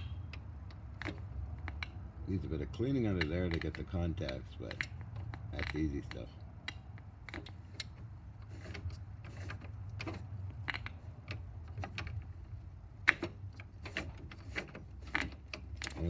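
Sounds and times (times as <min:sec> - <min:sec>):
clicks and knocks of handling: 0:00.3 - 0:16.0.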